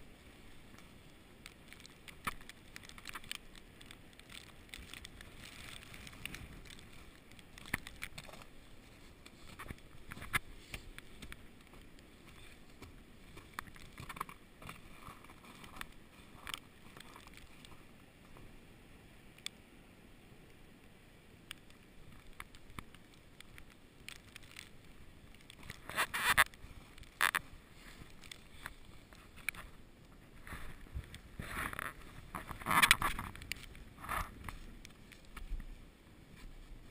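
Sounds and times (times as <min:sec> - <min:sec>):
crunches and scrapes in snow: 0:00.0 - 0:18.6, 0:22.0 - 0:36.9.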